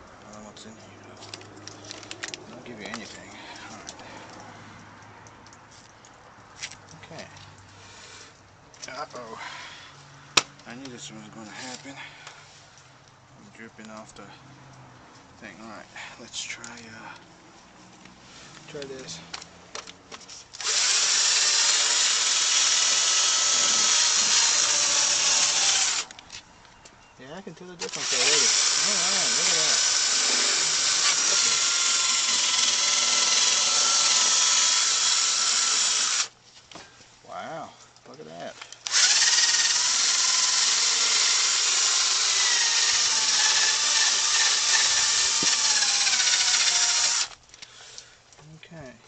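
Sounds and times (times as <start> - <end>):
electric drill polishing: 20.6 - 26.1, 27.9 - 36.3, 38.9 - 47.4.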